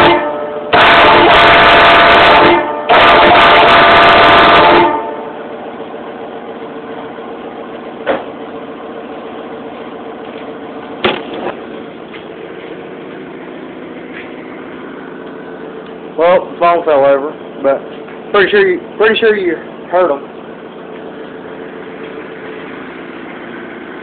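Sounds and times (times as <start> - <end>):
air horns blasting chord: 0.0 - 5.6
steady hum: 0.0 - 24.0
sharp knocks: 11.0 - 11.6.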